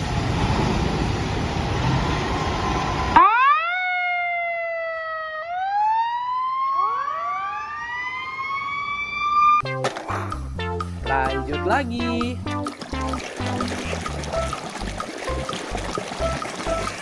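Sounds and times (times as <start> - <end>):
fire engine siren wailing: 2.0 - 9.6.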